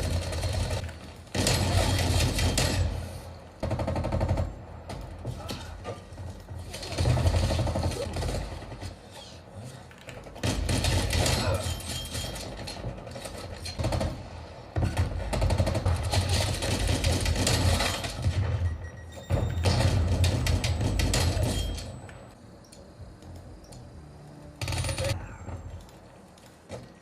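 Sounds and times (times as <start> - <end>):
rapid gunshots: 0.0 - 5.2, 6.2 - 9.1, 10.4 - 18.7, 19.3 - 21.8.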